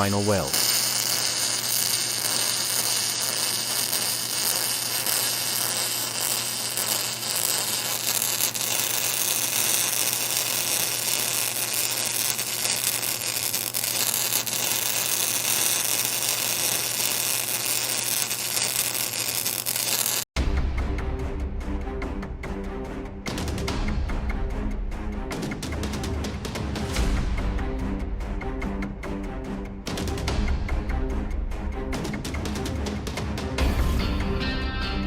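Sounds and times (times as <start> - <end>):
welding arc buzzing and hissing: 0.0 - 20.3.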